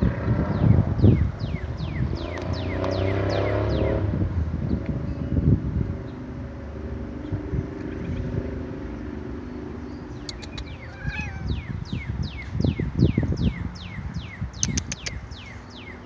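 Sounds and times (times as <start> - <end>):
wind on microphone: 0.0 - 16.0
songbird whistling: 10.1 - 16.0
high ticks: 10.2 - 10.8, 14.6 - 15.2.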